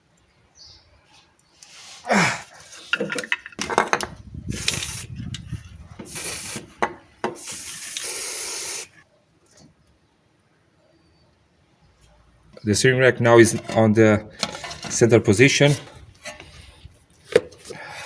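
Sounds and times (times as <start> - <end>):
parts knocking and clattering: 2.6 - 7.5, 13.2 - 17.8
spray hissing bursts: 4.5 - 5.1, 6.0 - 9.0.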